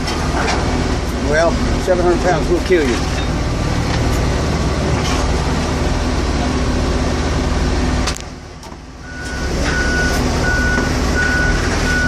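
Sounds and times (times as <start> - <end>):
heavy equipment engine running: 0.0 - 12.0
reversing alarm beeping: 9.0 - 12.0.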